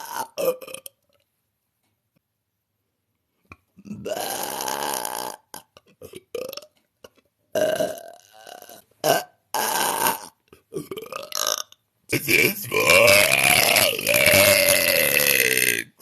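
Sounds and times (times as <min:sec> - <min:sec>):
woman burping: 0:07.6 - 0:16.0.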